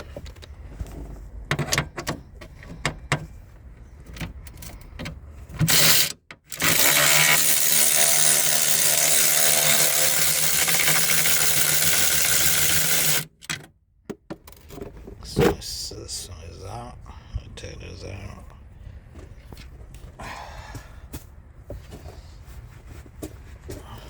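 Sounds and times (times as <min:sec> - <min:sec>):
power tool whine: 0:05.7 - 0:13.3.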